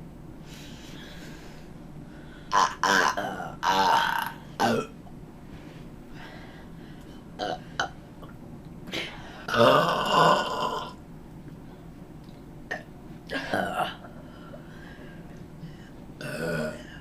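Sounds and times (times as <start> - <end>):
girl burping loudly: 2.5 - 4.9, 9.5 - 11.0, 16.2 - 16.9.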